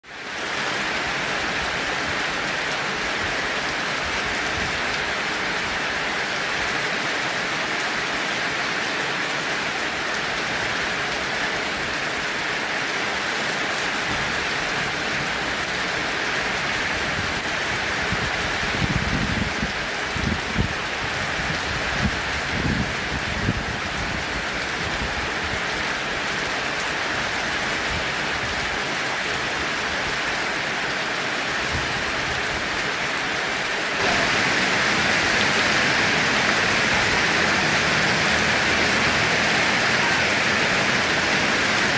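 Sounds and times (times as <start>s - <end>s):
heavy rain hissing: 31.4s - 41.9s.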